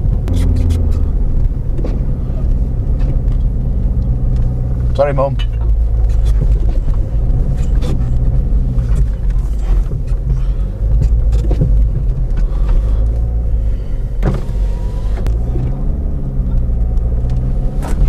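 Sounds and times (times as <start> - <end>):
car engine and road noise: 0.0 - 18.0.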